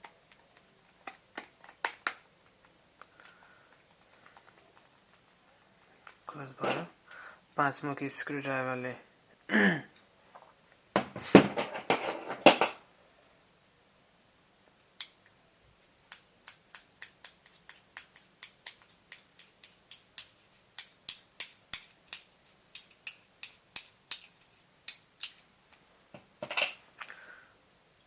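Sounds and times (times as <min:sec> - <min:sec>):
screwdriver clicking on screws: 0:16.1 - 0:25.4.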